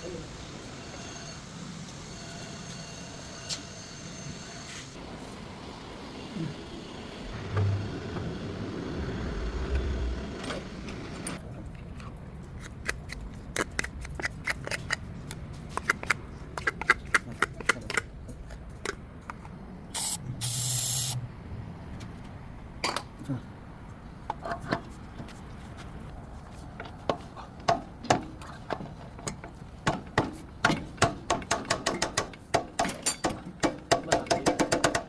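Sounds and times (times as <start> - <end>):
loud air hiss: 20.0 - 21.2.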